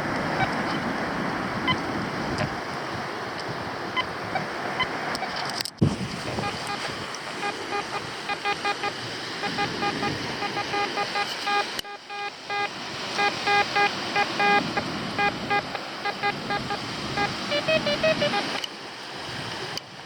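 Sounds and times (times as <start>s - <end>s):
metal detector short beeps: 6.4s - 6.8s, 7.4s - 18.6s.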